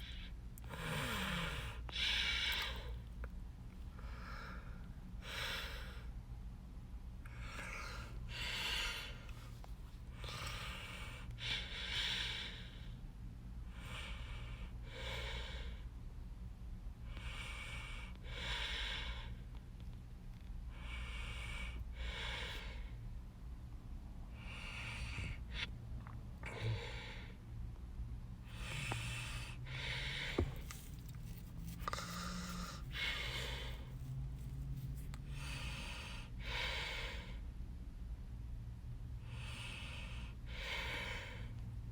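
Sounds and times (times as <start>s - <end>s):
steady low hum: 0.0s - 41.9s
person breathing: 3.9s - 6.2s, 28.4s - 34.6s, 35.2s - 37.4s.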